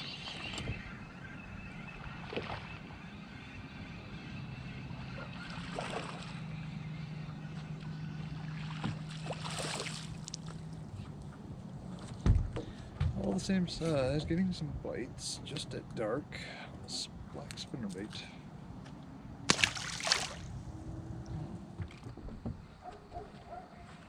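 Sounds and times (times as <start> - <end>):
boat low hum: 0.0 - 24.0
water splashing: 5.0 - 6.7, 7.4 - 12.2, 19.5 - 21.3
water knocking against hull: 12.0 - 13.5.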